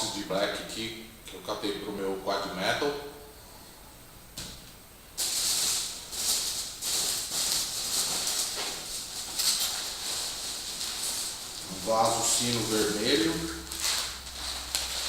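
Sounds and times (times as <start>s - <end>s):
hands rummaging in packing peanuts: 5.2s - 15.0s.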